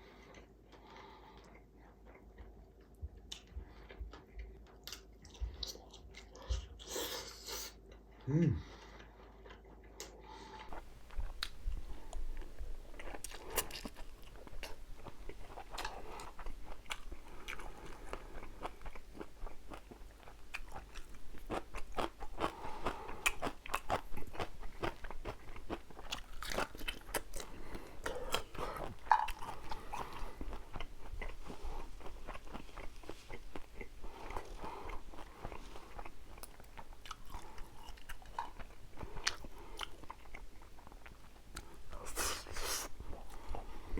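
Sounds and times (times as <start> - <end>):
person chewing food: 0.0 - 43.9.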